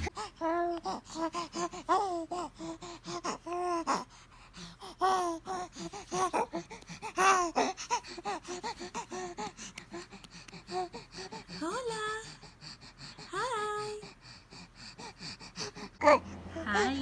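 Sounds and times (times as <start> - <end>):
baby cooing and grunting: 0.0 - 0.7, 16.0 - 17.0.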